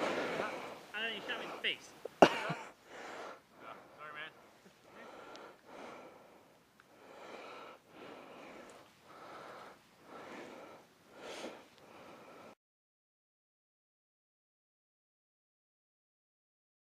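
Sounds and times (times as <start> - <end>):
person breathing: 0.0 - 1.8, 2.6 - 12.6.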